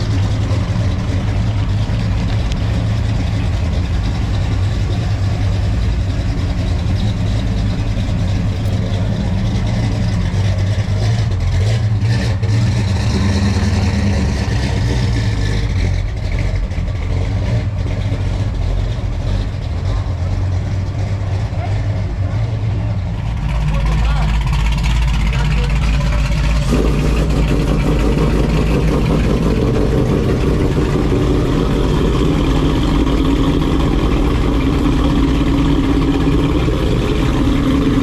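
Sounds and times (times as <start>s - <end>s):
car engine idling: 0.0s - 38.0s.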